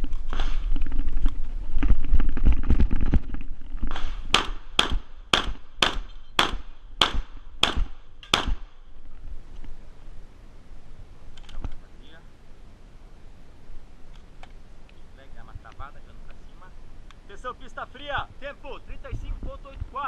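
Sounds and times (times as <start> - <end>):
shotgun shots: 3.9 - 8.8.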